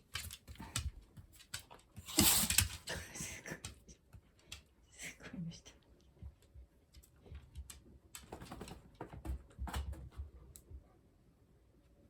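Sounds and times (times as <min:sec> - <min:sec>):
claws clicking on wooden floor: 0:00.0 - 0:02.9
pet sneezing: 0:02.0 - 0:02.7.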